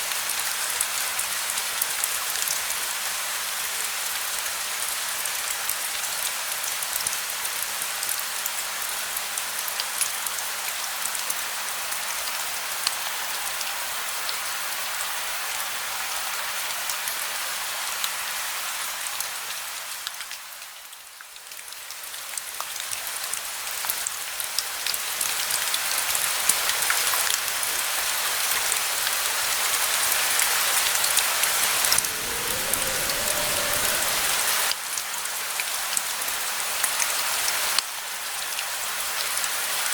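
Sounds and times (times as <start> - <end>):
steady rain: 0.0 - 35.4
low rumble: 31.2 - 34.9.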